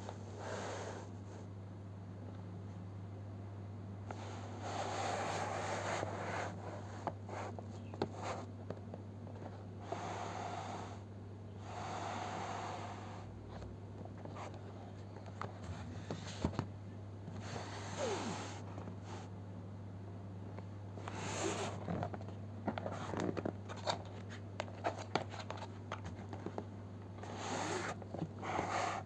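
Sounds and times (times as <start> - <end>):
steady low hum: 0.0 - 29.0
cardboard rubbing and sliding: 4.1 - 8.5, 27.2 - 29.0.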